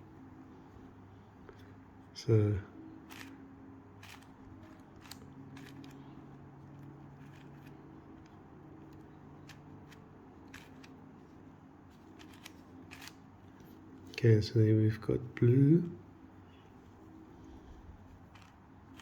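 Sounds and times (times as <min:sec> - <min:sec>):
puzzle cube clicking: 0:04.0 - 0:06.0, 0:08.9 - 0:11.0, 0:12.1 - 0:13.2, 0:18.3 - 0:19.0.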